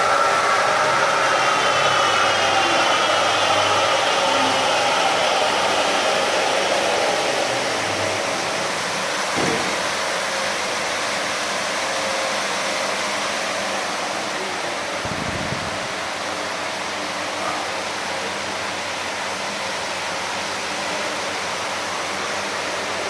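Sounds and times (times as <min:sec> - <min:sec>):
carpet washing machine running: 0:00.0 - 0:23.0
short knock: 0:09.4 - 0:09.9.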